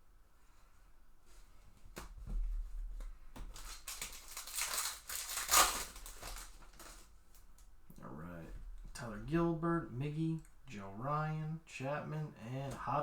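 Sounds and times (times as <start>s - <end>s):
foil wrapper tearing and crinkling: 3.4s - 7.5s.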